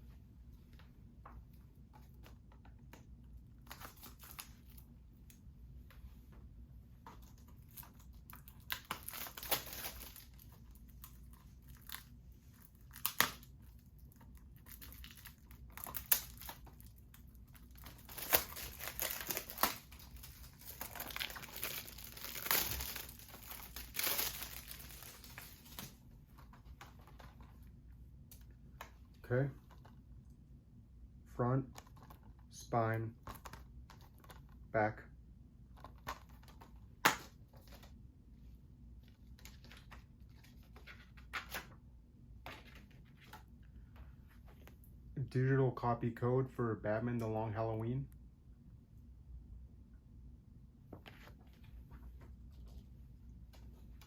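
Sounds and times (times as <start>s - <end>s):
plastic wrap crinkling and tearing: 3.6s - 4.8s, 7.6s - 26.0s.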